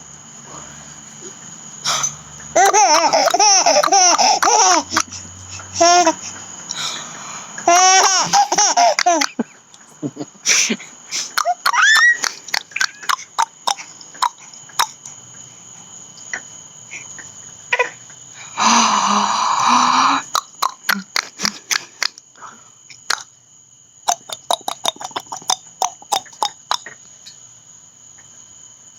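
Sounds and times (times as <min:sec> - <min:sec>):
burst of laughter: 0:02.6 - 0:05.3, 0:07.6 - 0:13.2.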